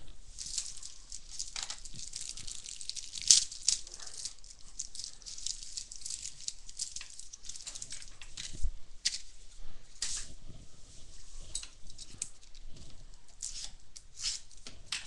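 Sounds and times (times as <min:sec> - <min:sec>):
packaging crinkling: 0:00.0 - 0:09.2.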